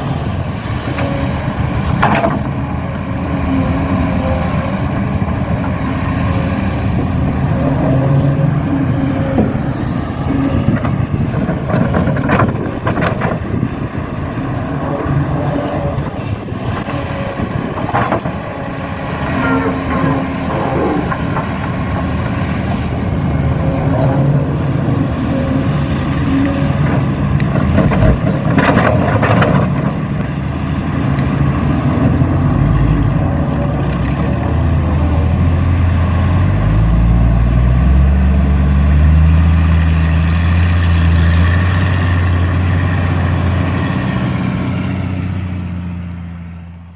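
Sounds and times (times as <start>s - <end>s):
model truck engine hum: 0.0s - 46.9s.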